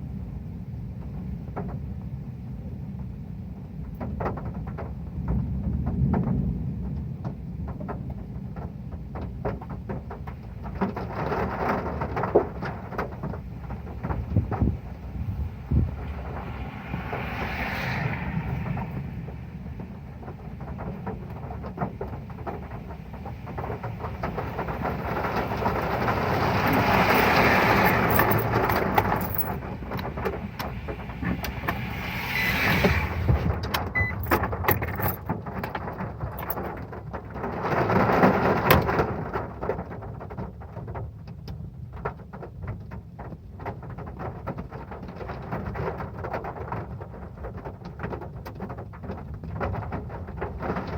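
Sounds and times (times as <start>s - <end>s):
heavy rain on a metal roof: 0.0s - 50.9s.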